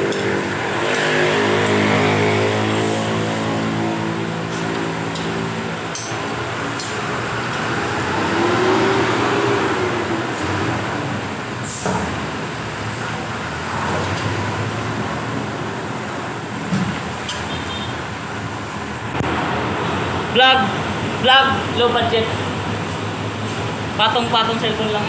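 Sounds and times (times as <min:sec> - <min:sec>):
vehicle engine passing: 0:00.0 - 0:16.4
road traffic passing: 0:00.0 - 0:25.0.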